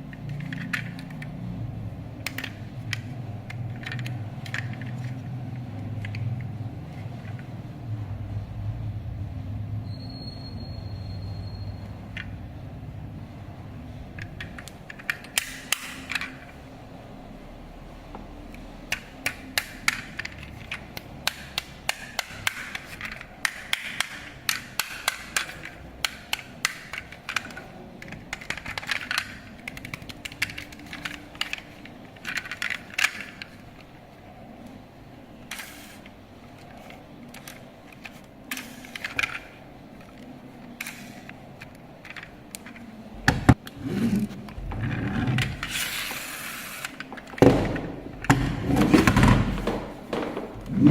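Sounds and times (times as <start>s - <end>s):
toy car clattering and scraping: 0.0s - 1.4s, 2.2s - 7.5s, 14.1s - 16.6s, 18.9s - 34.0s, 35.4s - 42.9s, 43.6s - 50.9s.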